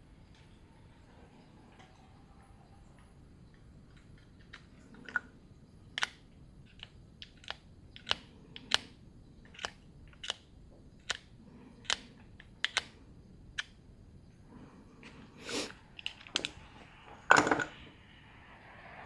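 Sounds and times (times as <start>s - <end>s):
small parts clicking: 5.9s - 13.8s, 15.5s - 16.6s.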